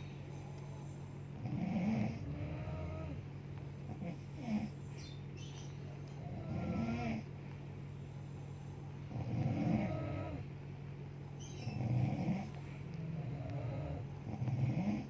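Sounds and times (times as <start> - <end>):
steady low hum: 0.0 - 15.0
woman snoring: 1.4 - 3.2, 6.3 - 7.3, 9.1 - 10.4, 13.1 - 15.0.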